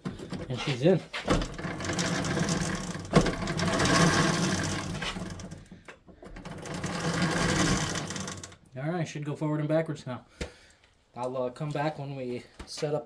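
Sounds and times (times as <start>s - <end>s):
chain rattling over sprockets: 1.5s - 5.7s, 6.4s - 8.6s.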